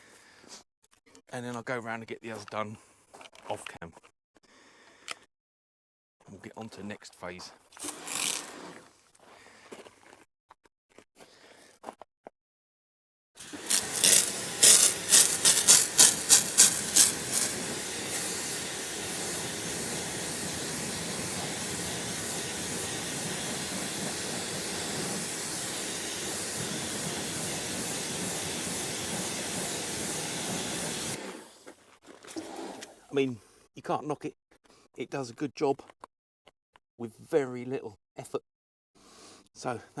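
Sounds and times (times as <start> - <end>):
pressure washer spraying: 7.8 - 8.6, 13.4 - 31.4.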